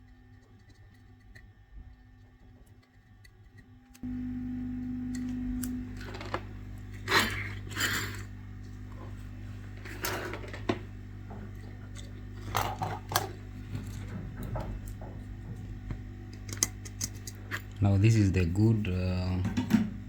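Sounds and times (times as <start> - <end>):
steady electrical hum: 0.0 - 20.0
tools scraping and clicking: 16.3 - 17.8.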